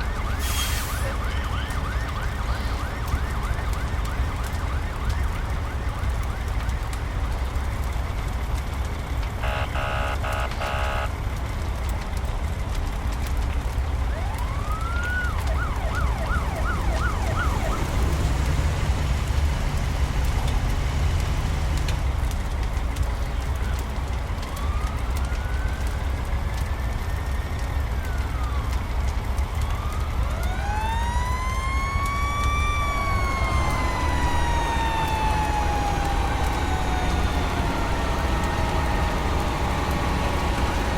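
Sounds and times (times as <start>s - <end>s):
fire engine siren yelping: 0.0s - 40.9s
house fire rumbling and crackling: 0.0s - 40.9s
fire engine horn blasts: 9.4s - 11.2s
low rumble: 29.2s - 40.9s.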